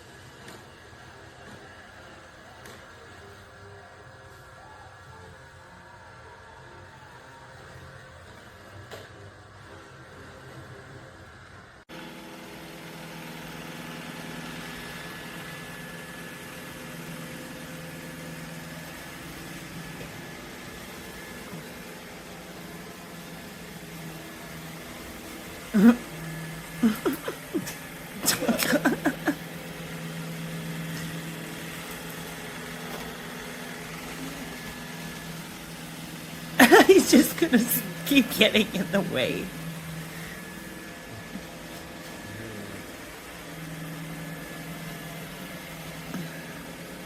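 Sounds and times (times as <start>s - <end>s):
robot vacuum running: 6.2s - 47.0s.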